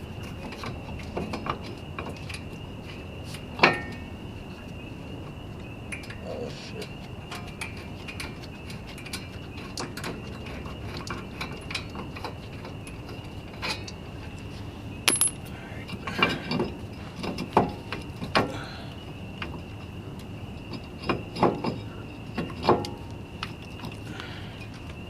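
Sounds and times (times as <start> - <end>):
metal tools clinking: 15.1 - 15.5.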